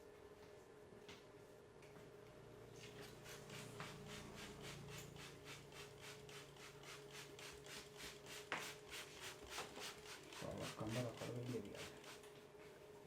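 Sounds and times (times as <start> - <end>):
hands rubbing hair and scalp: 2.8 - 12.2.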